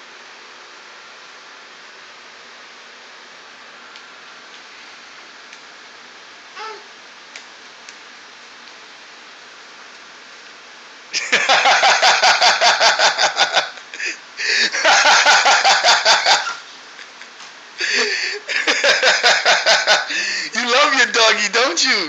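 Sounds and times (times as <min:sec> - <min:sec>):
person laughing hard: 0:11.2 - 0:16.6, 0:17.8 - 0:20.5.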